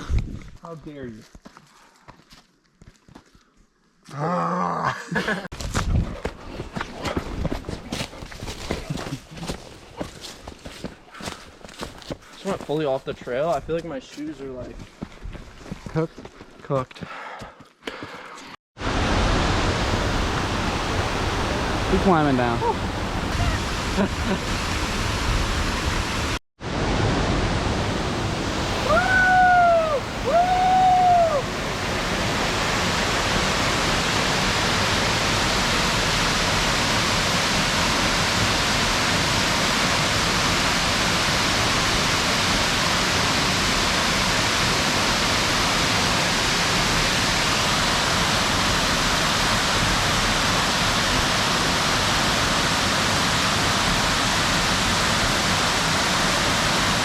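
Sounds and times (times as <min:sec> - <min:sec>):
waterfall rushing: 0:18.8 - 0:57.0.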